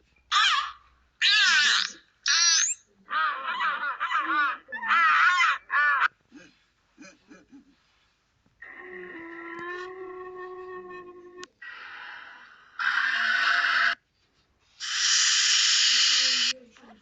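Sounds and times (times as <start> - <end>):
shrill wavering bird squawks: 0.3 - 2.8, 14.8 - 16.5.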